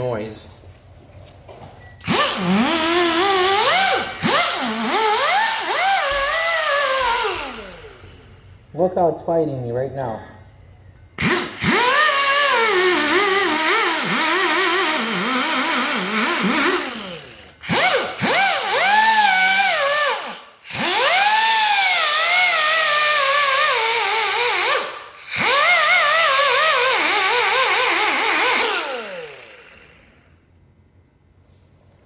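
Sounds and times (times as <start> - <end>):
air sander grinding metal: 2.0 - 8.3, 11.2 - 30.1.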